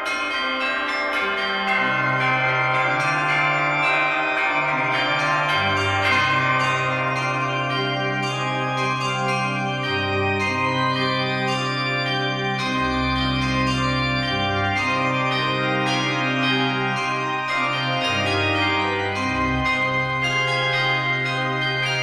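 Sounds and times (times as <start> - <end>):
church bells ringing: 0.0 - 22.0
organ chords: 4.6 - 22.0.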